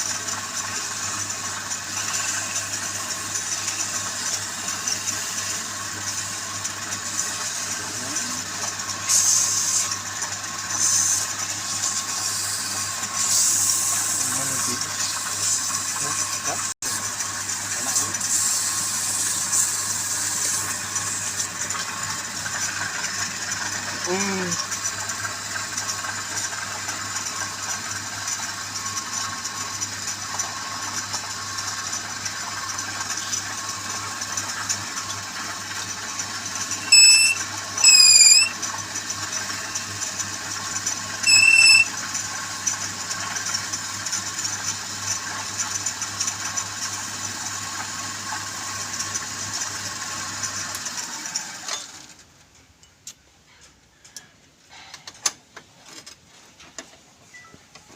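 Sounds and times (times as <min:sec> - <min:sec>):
wood lathe running: 0:00.2 - 0:17.0
lathe winding down: 0:28.4 - 0:47.4
short loud high tones: 0:36.8 - 0:38.6, 0:41.2 - 0:42.0.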